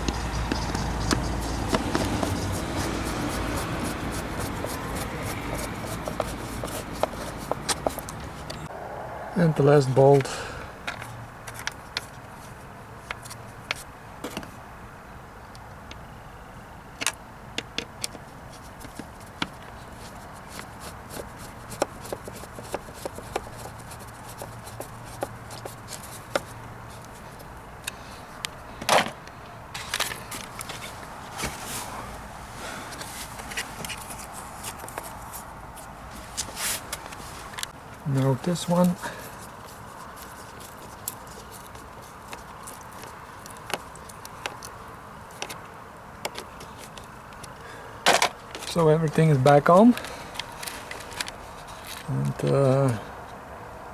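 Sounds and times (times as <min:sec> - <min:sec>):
hand tools clicking and tapping: 0:00.0 - 0:08.6, 0:17.0 - 0:30.8, 0:38.6 - 0:48.8
steady background hiss: 0:06.8 - 0:15.5, 0:18.4 - 0:53.9
light clicks and taps of parts: 0:36.4 - 0:47.6.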